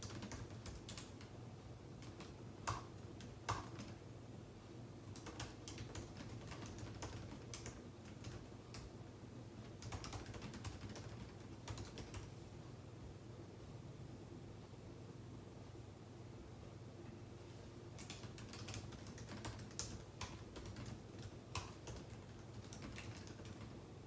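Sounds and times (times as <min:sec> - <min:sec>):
typing on computer keyboard: 0:00.0 - 0:01.4, 0:02.0 - 0:04.0, 0:05.1 - 0:08.9, 0:09.6 - 0:12.3, 0:17.9 - 0:23.8.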